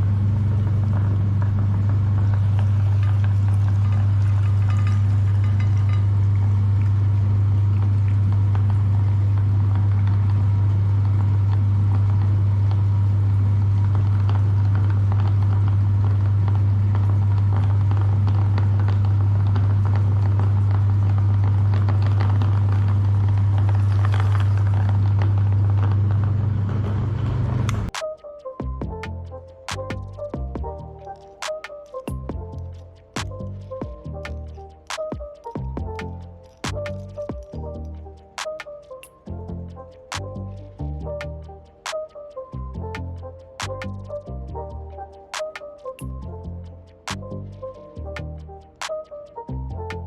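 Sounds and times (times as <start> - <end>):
meat grinder motor hum: 0.0 - 27.9
crackly grinding noise: 0.0 - 28.2, 29.0 - 50.0.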